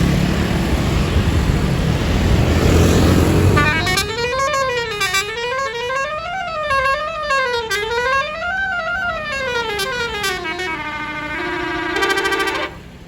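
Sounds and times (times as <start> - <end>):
melodic bus horn: 2.7 - 13.0.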